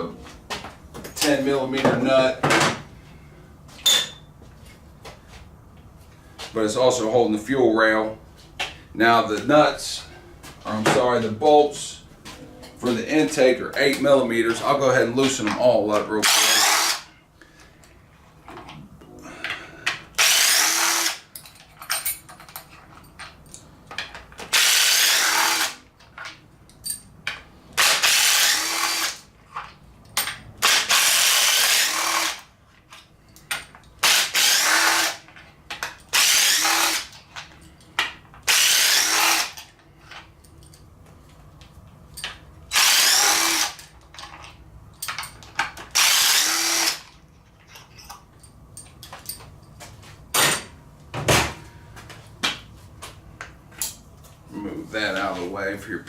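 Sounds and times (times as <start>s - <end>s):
impact wrench running: 16.2s - 17.1s, 20.1s - 21.4s, 24.4s - 25.9s, 27.8s - 29.3s, 30.6s - 32.5s, 34.0s - 35.3s, 36.0s - 37.3s, 38.4s - 39.7s, 42.7s - 44.0s, 45.9s - 47.2s.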